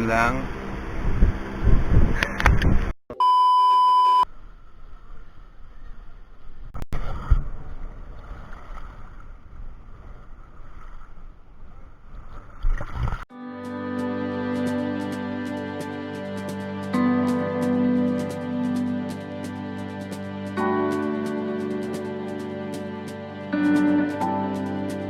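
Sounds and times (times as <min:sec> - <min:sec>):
music: 0:13.3 - 0:25.0.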